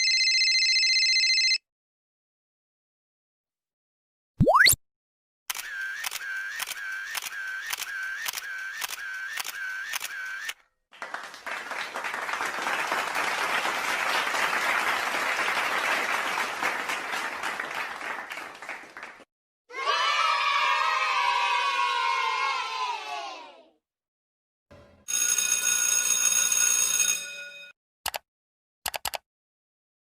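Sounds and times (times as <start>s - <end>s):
camera shutter clicking: 5.5s - 10.5s
applause: 10.9s - 19.3s.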